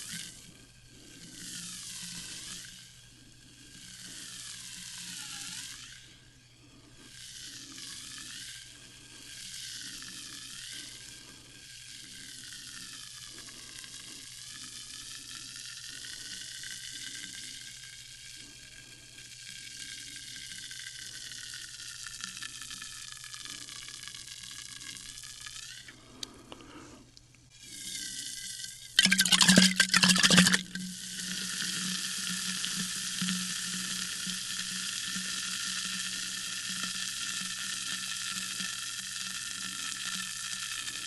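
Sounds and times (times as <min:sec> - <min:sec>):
faint hum: 0:00.0 - 0:41.0
sparkling water fizzing: 0:29.0 - 0:30.8.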